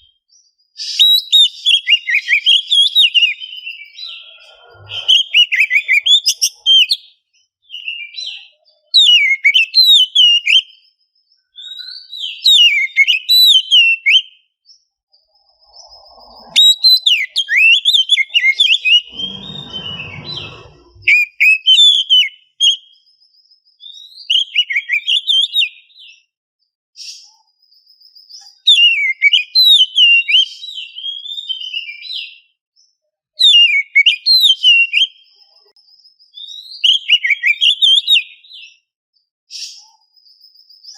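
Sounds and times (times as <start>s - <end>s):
bird singing whistled phrases: 0.8s - 14.5s, 15.4s - 23.0s, 23.8s - 26.2s, 28.7s - 32.4s, 36.4s - 38.8s
rough noisy sound: 18.6s - 21.1s.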